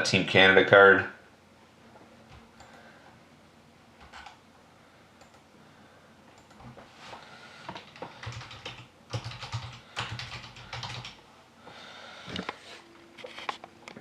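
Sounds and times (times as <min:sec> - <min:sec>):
typing on a computer keyboard: 0:04.0 - 0:04.4, 0:07.7 - 0:11.2.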